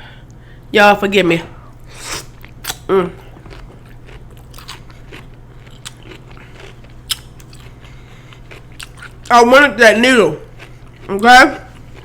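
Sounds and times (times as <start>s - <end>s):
chewing and biting: 2.2s - 9.3s, 10.4s - 12.0s.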